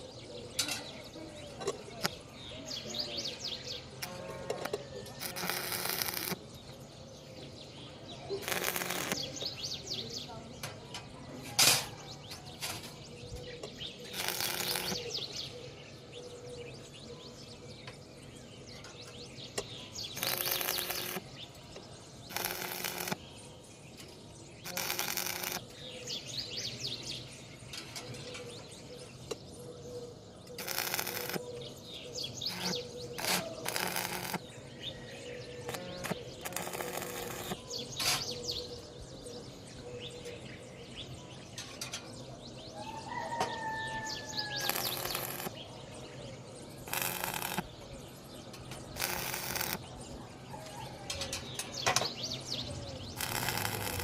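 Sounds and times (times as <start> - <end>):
birds chirping faintly: 0.0 - 54.0
arc welder crackling hiss: 4.0 - 6.4, 8.4 - 9.6, 14.1 - 15.3, 20.1 - 21.2, 22.3 - 23.2, 24.7 - 25.7, 30.6 - 31.5, 32.3 - 34.5, 35.7 - 38.3, 44.4 - 45.6, 46.8 - 47.8, 48.8 - 49.8, 53.1 - 54.0.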